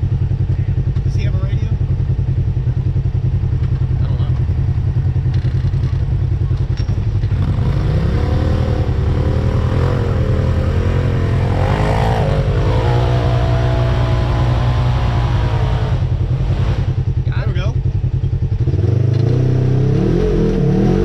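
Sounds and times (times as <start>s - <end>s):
off-road vehicle engine rumbling: 0.0s - 21.0s.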